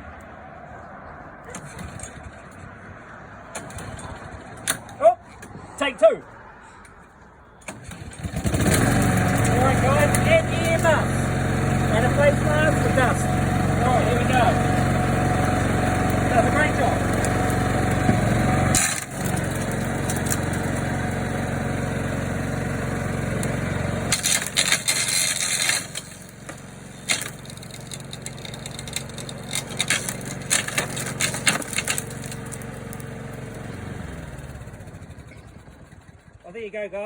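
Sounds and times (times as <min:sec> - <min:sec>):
lawn mower engine running: 0:01.5 - 0:04.9, 0:07.6 - 0:36.4
blade cracking and crunching wood: 0:07.7 - 0:21.1, 0:23.4 - 0:33.7.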